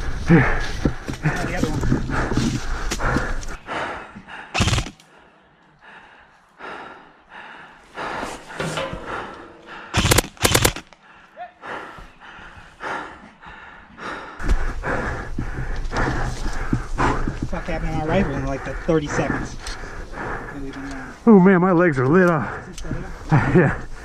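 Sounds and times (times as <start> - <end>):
airsoft gun shots: 4.6 - 5.0, 9.9 - 10.8.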